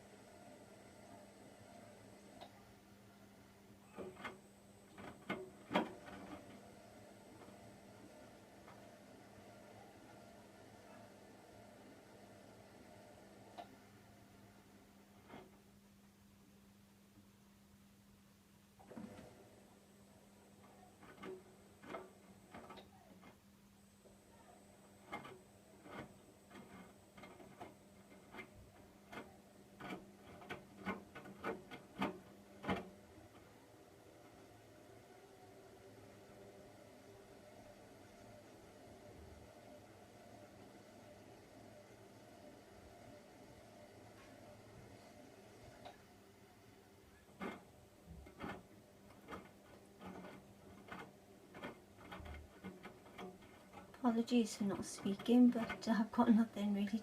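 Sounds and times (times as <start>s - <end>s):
washing machine motor hum: 0.0s - 16.6s, 18.7s - 57.0s.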